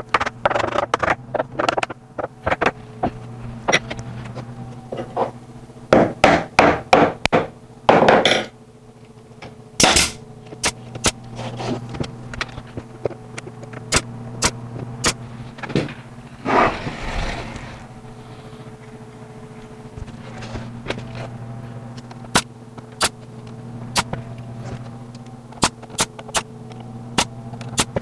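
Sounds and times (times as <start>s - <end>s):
steady low hum: 0.0s - 16.5s, 17.7s - 28.0s
nail gun firing: 9.8s - 11.2s, 13.9s - 15.2s, 25.6s - 26.4s, 27.2s - 28.0s.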